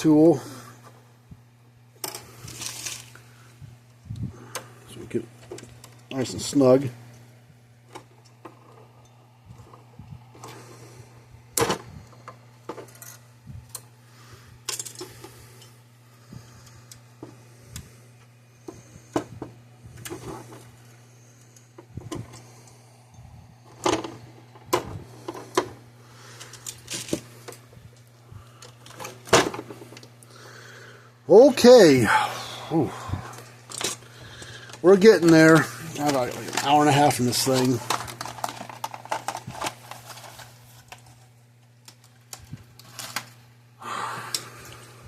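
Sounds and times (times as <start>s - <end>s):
steady low hum: 0.0s - 45.0s
clatter of tools and metal parts: 11.6s - 13.2s, 14.6s - 15.7s, 33.4s - 41.2s.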